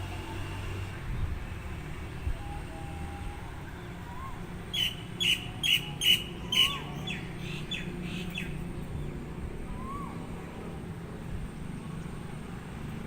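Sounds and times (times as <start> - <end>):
low background rumble: 0.0 - 13.0
soft low whistle: 2.2 - 5.0, 9.6 - 10.8
bird chirping: 4.7 - 8.6.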